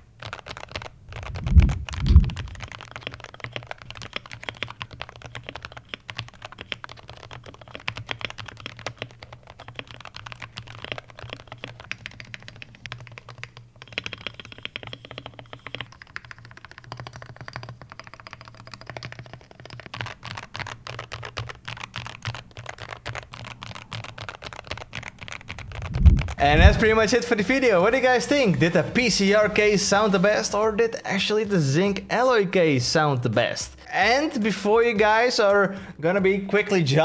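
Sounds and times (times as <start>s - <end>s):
fast typing on mechanical keyboard: 0.0s - 36.0s.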